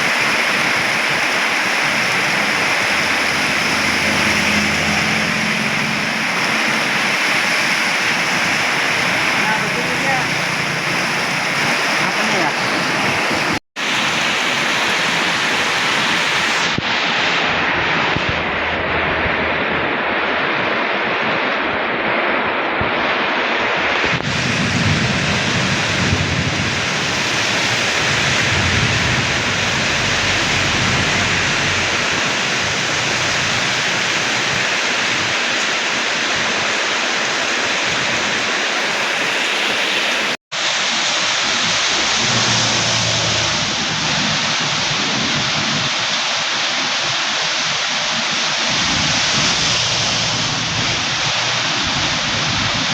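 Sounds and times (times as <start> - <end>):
heavy rain pouring: 0.0 - 52.9
low rumble: 17.2 - 21.6, 24.2 - 34.2, 41.4 - 45.4.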